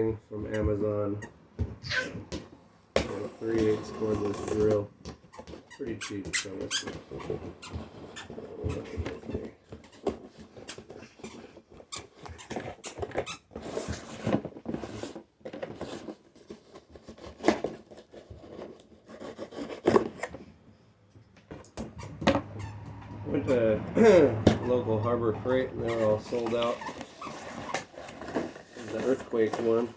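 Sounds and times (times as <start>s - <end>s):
rasping rustle: 21.9s - 29.9s.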